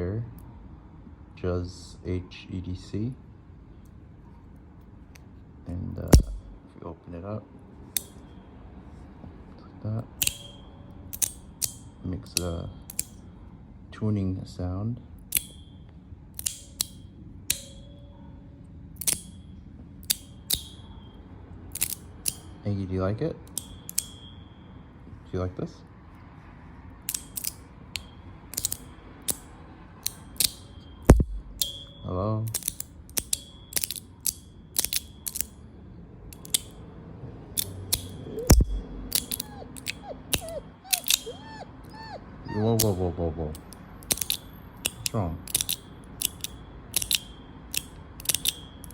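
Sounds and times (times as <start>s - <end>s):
high ringing tone: 10.3s - 11.1s, 17.0s - 21.4s, 23.6s - 25.2s, 30.2s - 32.4s
fidget slider clicks: 37.6s - 41.3s, 43.6s - 48.9s.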